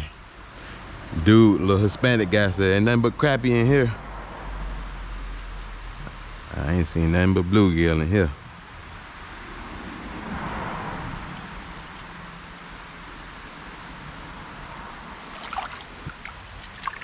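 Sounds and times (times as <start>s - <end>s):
outdoor background noise: 0.0s - 17.0s
light rustling and clicks: 9.8s - 17.0s.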